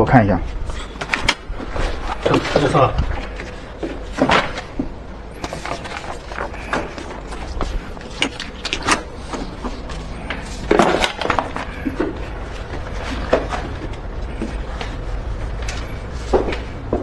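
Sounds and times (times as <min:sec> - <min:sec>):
low steady hum: 0:00.0 - 0:17.0
objects knocking and clattering: 0:01.0 - 0:15.0.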